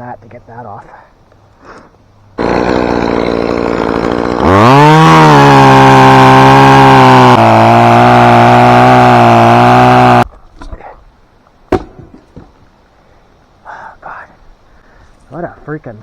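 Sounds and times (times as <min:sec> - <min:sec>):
chainsaw running at full throttle: 0:02.4 - 0:10.2.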